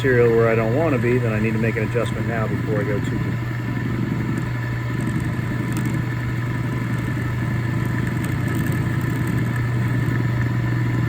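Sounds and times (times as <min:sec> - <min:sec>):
drill press motor humming: 0:00.0 - 0:11.0
faint scratchy ticks: 0:07.8 - 0:09.7.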